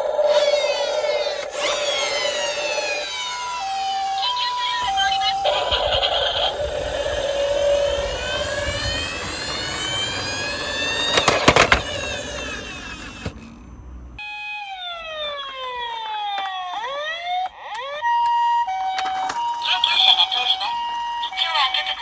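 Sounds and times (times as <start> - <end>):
toy ambulance siren: 0.0 - 13.5, 14.2 - 22.0
sharp clatter: 0.3 - 14.2
low rolling rumble: 5.0 - 14.2.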